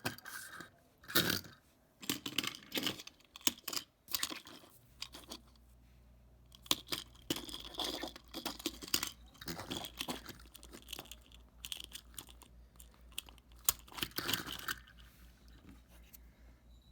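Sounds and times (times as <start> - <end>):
faint low hum: 0.0 - 16.9
toy packaging tearing and crinkling: 6.7 - 12.5, 13.1 - 15.0.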